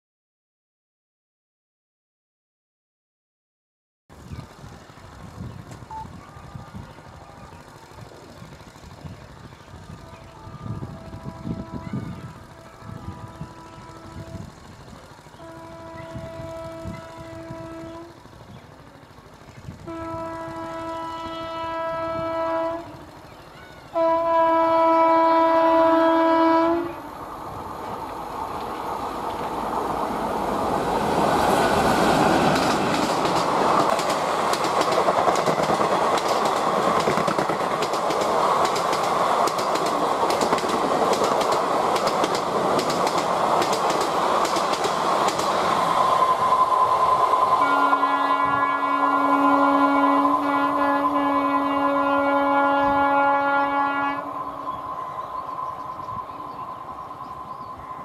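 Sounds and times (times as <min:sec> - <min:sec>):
train coaches clattering on track: 0:04.2 - 0:58.0
locomotive two-tone horn: 0:09.9 - 0:18.4, 0:19.8 - 0:27.2, 0:46.1 - 0:55.1.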